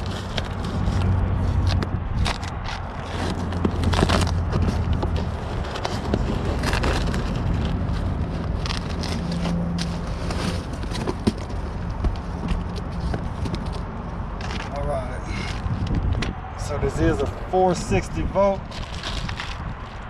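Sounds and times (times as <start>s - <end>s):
clicks knocks and scrapes: 0.0s - 14.8s.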